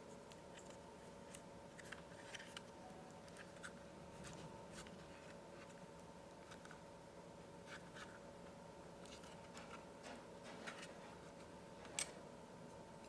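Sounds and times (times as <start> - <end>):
small clicks and rubbing: 0.0 - 2.7
faint steady hum: 0.0 - 13.0.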